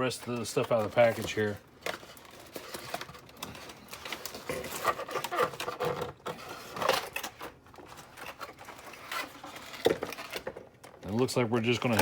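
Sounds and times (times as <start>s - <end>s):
plastic packaging clicks and rustles: 0.0s - 12.0s.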